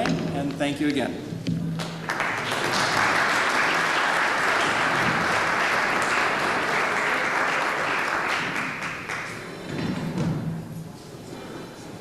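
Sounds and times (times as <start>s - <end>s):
audience applauding: 1.8s - 9.7s.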